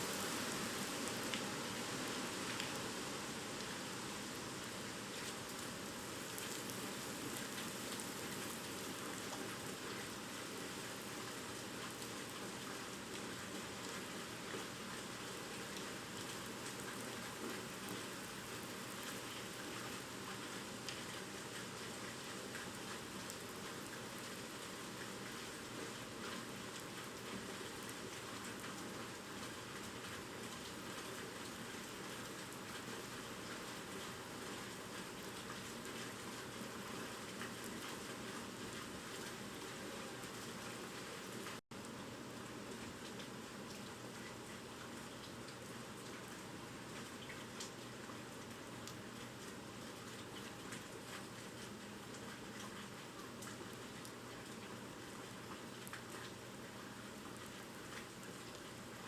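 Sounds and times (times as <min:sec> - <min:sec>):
heavy rain hissing: 0:00.0 - 0:09.0.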